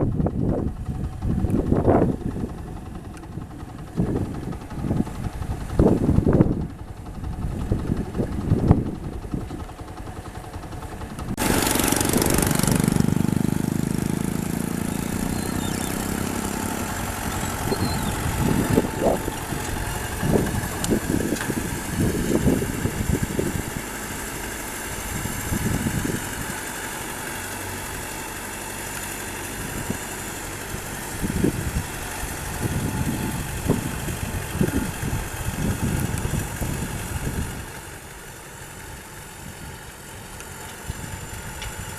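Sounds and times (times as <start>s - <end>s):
engine running: 0.0s - 41.9s
loud rushing noise: 11.4s - 14.6s.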